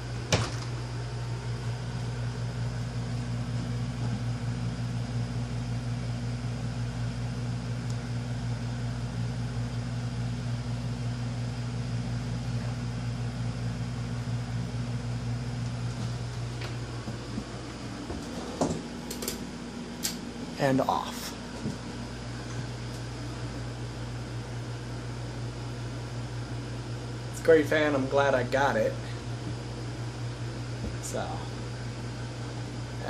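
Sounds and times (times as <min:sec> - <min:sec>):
ceiling fan motor hum: 0:00.0 - 0:33.0
fan switch click: 0:20.0 - 0:20.2.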